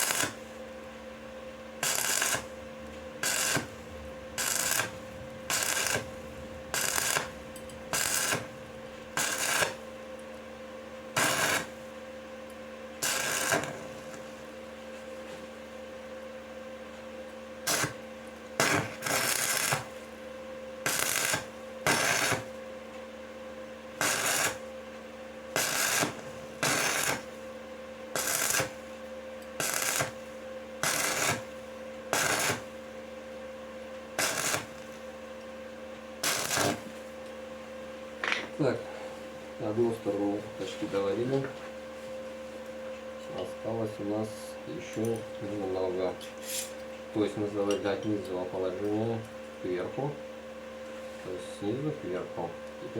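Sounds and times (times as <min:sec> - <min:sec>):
welding arc crackling: 0:00.0 - 0:00.5, 0:01.8 - 0:10.4, 0:11.0 - 0:12.0, 0:13.0 - 0:14.5, 0:17.6 - 0:18.0, 0:18.6 - 0:20.1, 0:20.8 - 0:22.6, 0:24.0 - 0:24.7, 0:25.5 - 0:27.4, 0:28.1 - 0:28.9, 0:29.6 - 0:32.8, 0:34.1 - 0:35.0, 0:36.2 - 0:37.1
steady low hum: 0:00.0 - 0:52.9.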